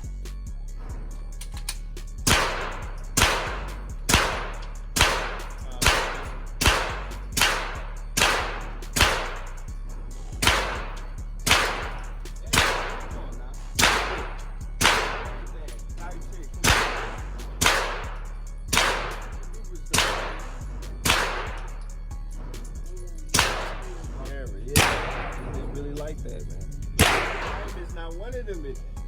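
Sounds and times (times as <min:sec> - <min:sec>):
pistol shots: 0:02.2 - 0:09.7, 0:10.4 - 0:15.8, 0:16.5 - 0:21.9, 0:23.3 - 0:24.2, 0:24.8 - 0:25.8, 0:26.9 - 0:28.0.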